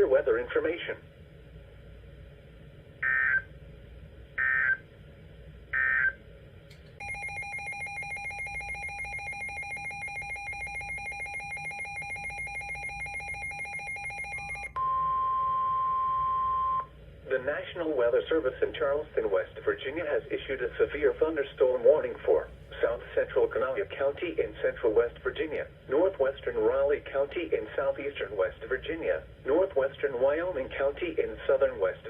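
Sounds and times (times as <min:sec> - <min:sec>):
pulsing electronic alarm: 0:03.0 - 0:03.5, 0:04.4 - 0:04.8, 0:05.8 - 0:06.2, 0:07.0 - 0:16.9.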